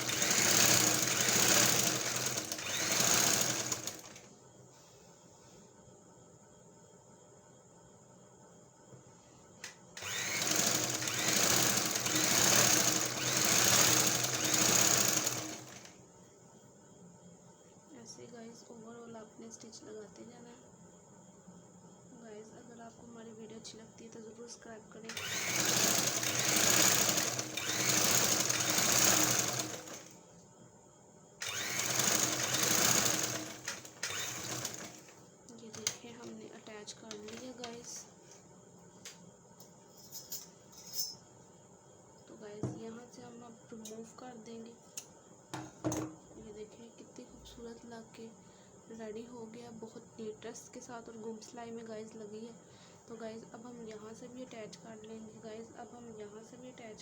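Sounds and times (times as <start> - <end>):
sewing machine stitching: 0.0 - 4.3, 10.0 - 16.0, 25.1 - 30.2, 31.4 - 35.1.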